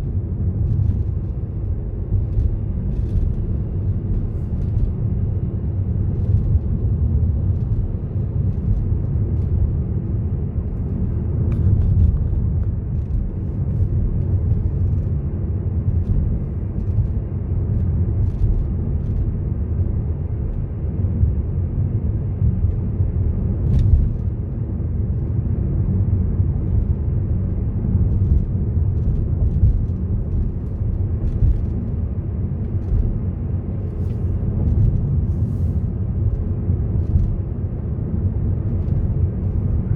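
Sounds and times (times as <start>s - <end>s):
car driving on road: 28.4s - 39.9s.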